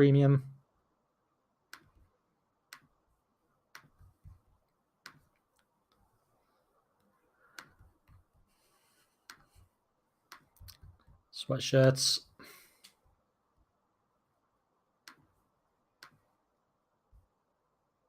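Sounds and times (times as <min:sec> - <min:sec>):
computer mouse clicks: 0:01.7 - 0:02.0, 0:03.7 - 0:04.2, 0:05.0 - 0:06.0, 0:07.0 - 0:08.3, 0:09.2 - 0:09.6, 0:10.3 - 0:11.0, 0:15.0 - 0:15.3, 0:16.0 - 0:16.2.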